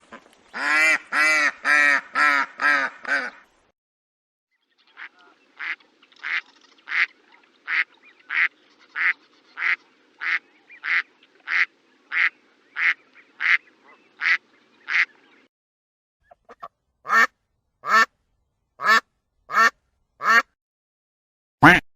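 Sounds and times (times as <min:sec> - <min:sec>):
ducks quacking: 0:00.0 - 0:03.4, 0:04.9 - 0:15.2, 0:16.3 - 0:18.1, 0:18.8 - 0:20.5.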